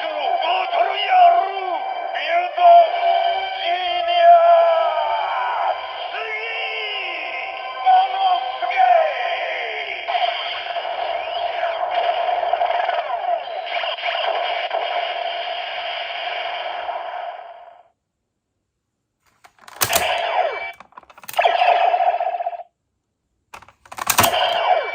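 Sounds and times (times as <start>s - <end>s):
plastic clicks: 19.3s - 21.6s, 23.6s - 24.6s
toy electronic sound effect: 20.8s - 22.0s.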